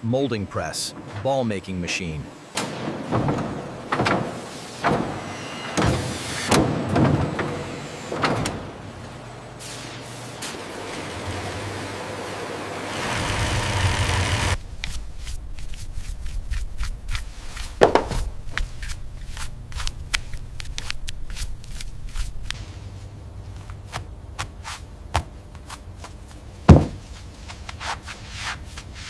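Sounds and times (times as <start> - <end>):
loud thumps: 26.7 - 27.0.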